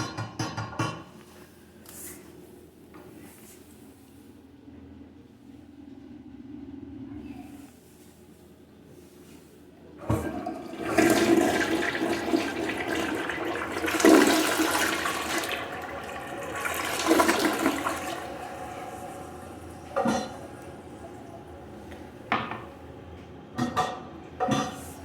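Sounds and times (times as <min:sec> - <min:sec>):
toilet flush water rushing: 0:10.0 - 0:24.3.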